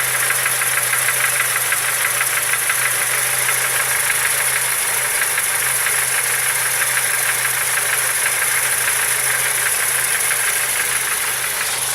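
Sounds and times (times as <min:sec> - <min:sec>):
car engine idling: 0:00.0 - 0:11.9
engine knocking tick: 0:00.0 - 0:11.9.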